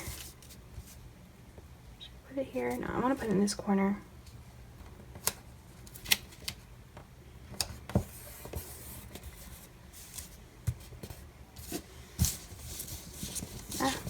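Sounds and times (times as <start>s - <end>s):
paper rustling: 7.9s - 14.0s.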